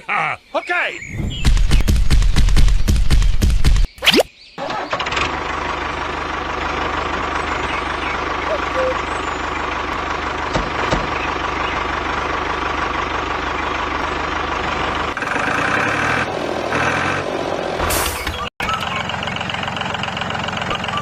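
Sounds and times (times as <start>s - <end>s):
tractor engine knocking: 4.6s - 16.6s, 18.7s - 21.0s.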